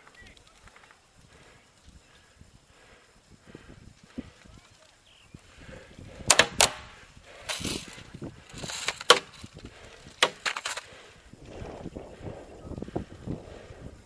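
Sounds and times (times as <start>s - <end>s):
rustling movement: 0.0s - 12.2s
airsoft gun shots: 6.2s - 7.0s.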